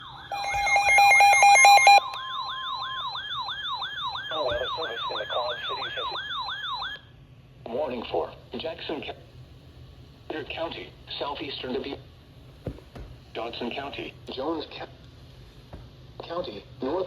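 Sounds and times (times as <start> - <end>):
electronic siren wail: 0.0 - 5.2
electronic beeps: 0.3 - 2.2.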